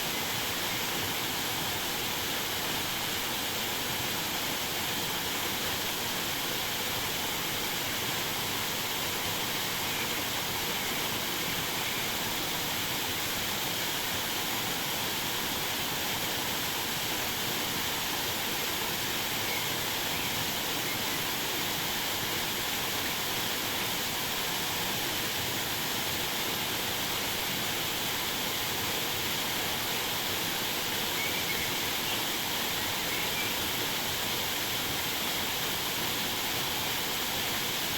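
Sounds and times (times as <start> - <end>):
waterfall rushing: 0.0 - 37.9
faint bird chirps: 30.8 - 33.8.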